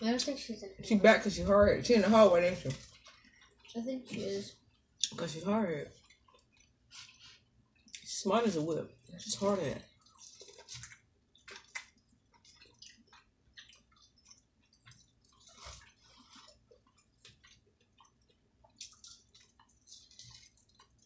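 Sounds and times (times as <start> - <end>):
chewing and lip-smacking: 2.6 - 5.2, 5.9 - 8.1, 9.8 - 21.0
soft slurp: 9.9 - 21.0.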